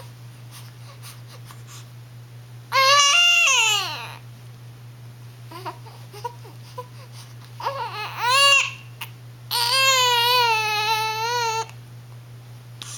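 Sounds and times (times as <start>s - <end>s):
baby crying: 2.7s - 4.2s, 7.6s - 11.8s.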